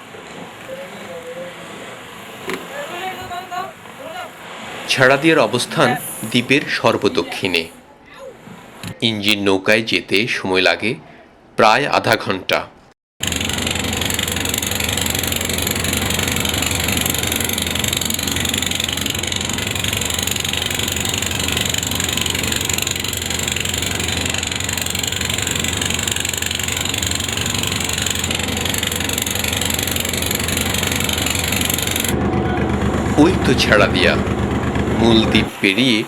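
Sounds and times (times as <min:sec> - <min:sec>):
boat motor humming: 0:00.0 - 0:07.7, 0:13.2 - 0:36.0
hiss of wind and water: 0:00.0 - 0:09.0, 0:32.8 - 0:36.0.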